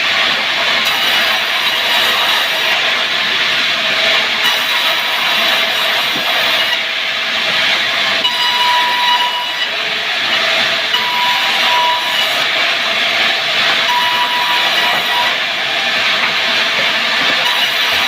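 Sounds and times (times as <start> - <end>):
sawmill saw running: 0.0 - 18.0
thin saw whine: 0.8 - 2.9, 4.4 - 6.9, 8.1 - 18.0.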